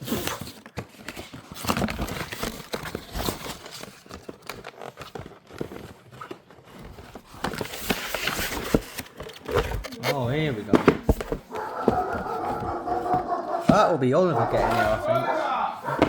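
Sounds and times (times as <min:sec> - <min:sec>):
rustling of things handled: 0:00.0 - 0:16.0
knocks and taps of handling: 0:10.7 - 0:13.9.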